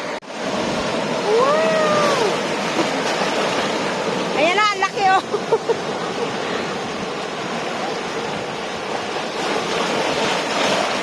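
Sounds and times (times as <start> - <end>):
ocean surf washing ashore: 0.0 - 11.0.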